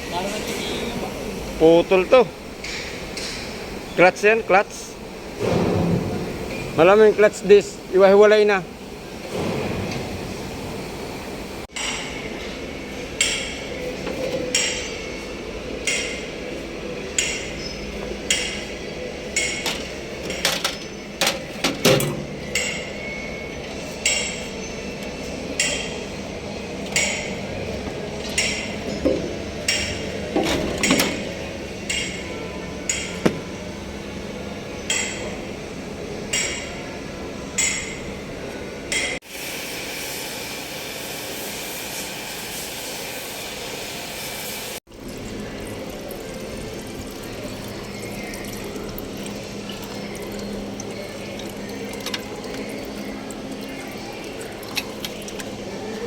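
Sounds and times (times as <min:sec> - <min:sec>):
hammer striking metal: 0:28.4 - 0:33.8.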